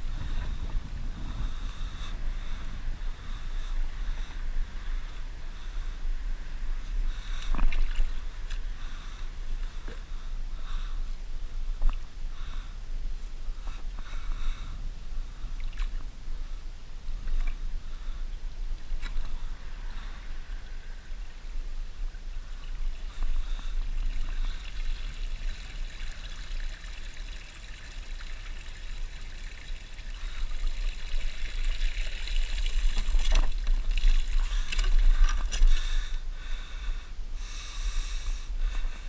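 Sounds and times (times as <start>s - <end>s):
water trickling: 22.4s - 36.0s.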